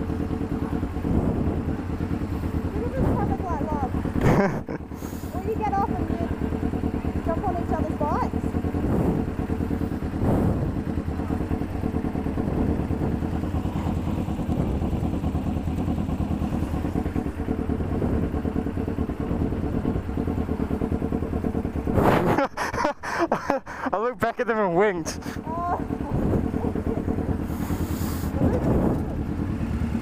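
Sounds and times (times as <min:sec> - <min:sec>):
motorcycle engine running: 0:00.0 - 0:30.0
wind noise: 0:08.8 - 0:09.4, 0:10.2 - 0:11.0, 0:28.3 - 0:29.3.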